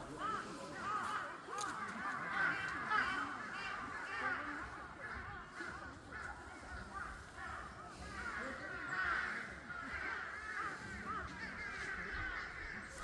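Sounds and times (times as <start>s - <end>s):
flock of corvids calling: 0.0s - 13.0s.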